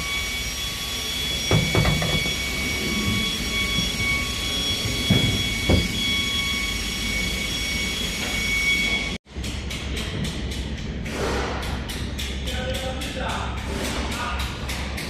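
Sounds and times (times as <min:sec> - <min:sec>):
workshop machine rumble and whine: 0:00.0 - 0:15.0
sharp metallic knocks: 0:01.5 - 0:02.4.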